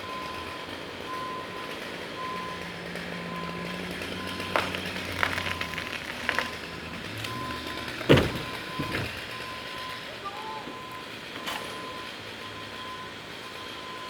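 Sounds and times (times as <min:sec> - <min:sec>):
engine running low: 0:00.0 - 0:14.0
sharp knocks: 0:08.1 - 0:09.2.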